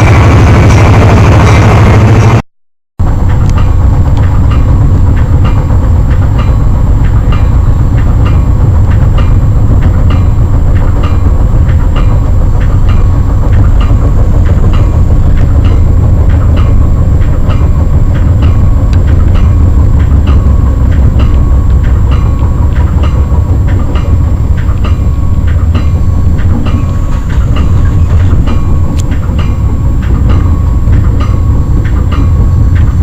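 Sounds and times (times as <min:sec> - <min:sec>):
train rumble: 0:00.0 - 0:02.4, 0:03.0 - 0:33.0
wheels clacking over rail joints: 0:03.0 - 0:33.0.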